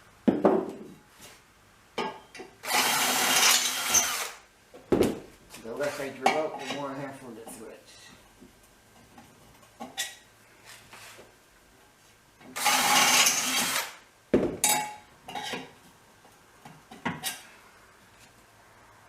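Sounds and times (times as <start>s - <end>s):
power drill drilling into metal: 2.6s - 4.4s, 12.6s - 14.0s.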